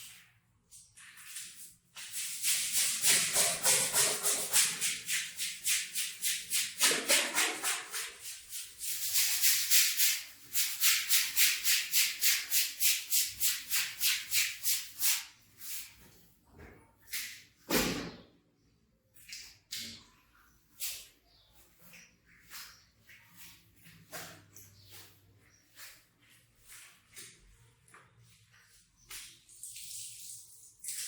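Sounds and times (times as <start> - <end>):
brush scrubbing wet rug: 0.0 - 16.3.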